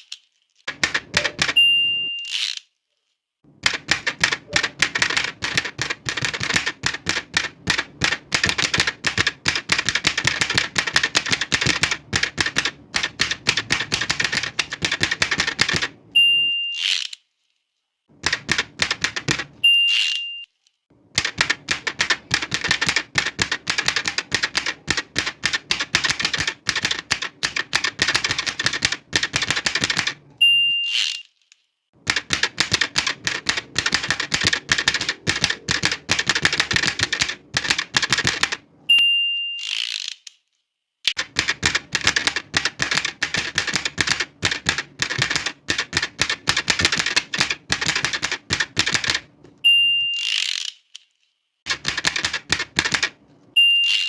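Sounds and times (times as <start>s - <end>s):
typewriter carriage return zip: 0.0s - 2.7s, 3.6s - 16.0s, 16.7s - 17.2s, 18.2s - 20.5s, 21.1s - 31.4s, 32.0s - 38.6s, 39.6s - 40.3s, 41.1s - 49.3s, 50.0s - 51.1s, 51.7s - 53.2s
typewriter keystrokes clacking: 0.7s - 1.6s, 3.5s - 16.0s, 18.2s - 19.6s, 21.1s - 30.4s, 32.0s - 38.6s, 41.1s - 49.4s, 51.7s - 53.2s
typewriter margin bell ding: 1.1s - 2.3s.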